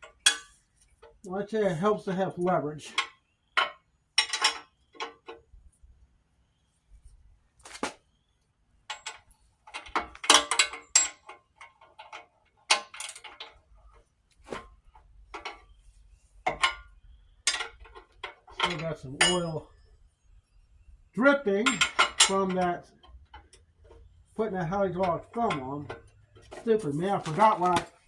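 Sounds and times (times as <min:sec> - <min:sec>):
wrench clanking against steel: 0:08.9 - 0:13.6, 0:17.5 - 0:19.6, 0:21.6 - 0:23.6, 0:24.9 - 0:27.8.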